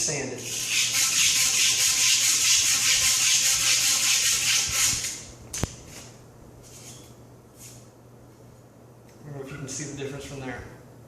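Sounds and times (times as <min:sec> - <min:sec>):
sanding copper pipe: 0:00.4 - 0:05.2.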